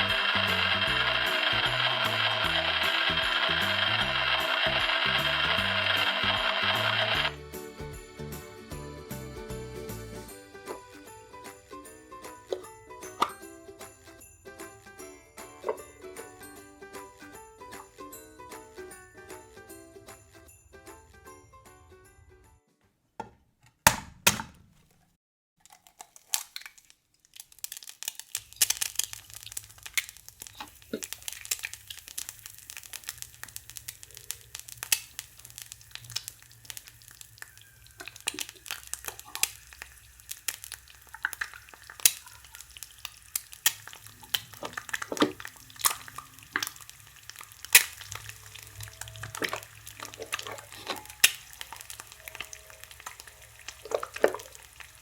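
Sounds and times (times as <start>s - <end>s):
electronic frying sound effect: 0.0s - 8.4s, 28.5s - 55.0s
plastic utensils tapping on pan: 38.0s - 46.8s, 47.4s - 55.0s.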